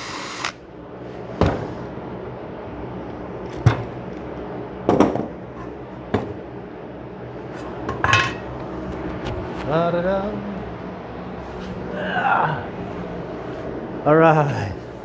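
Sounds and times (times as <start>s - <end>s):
steady background hum: 0.0s - 15.0s
tools knocking on workbench: 4.9s - 5.3s, 6.1s - 6.4s.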